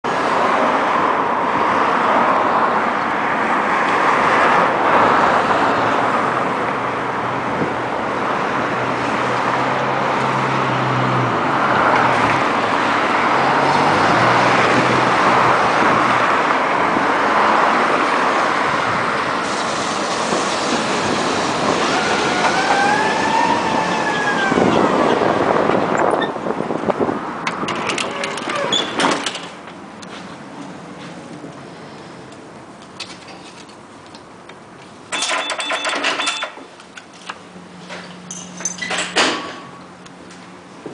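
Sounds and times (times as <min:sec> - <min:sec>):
tram wheels rumbling on rails: 0:13.3 - 0:31.1.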